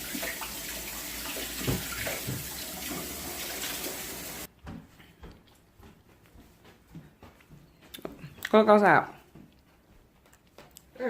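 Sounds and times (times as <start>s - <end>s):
water running from a tap: 0.0s - 4.5s.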